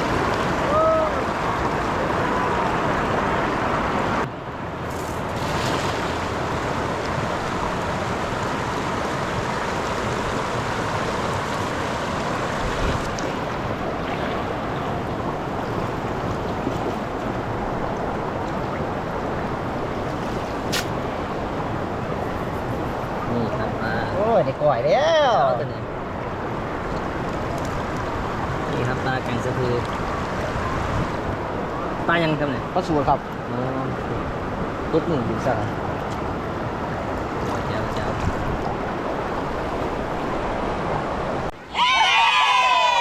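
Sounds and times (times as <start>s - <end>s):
water rushing over rocks: 0.0s - 22.2s.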